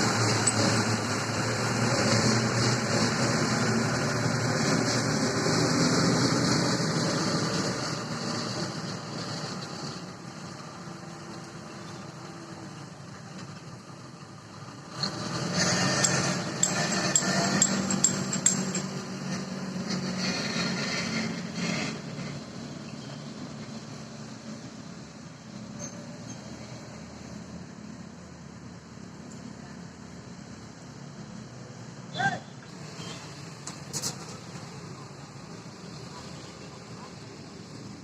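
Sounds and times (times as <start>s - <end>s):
diesel engine running: 0.0s - 25.6s
sharp metallic clinks and knocks: 0.2s - 1.0s, 15.6s - 19.5s.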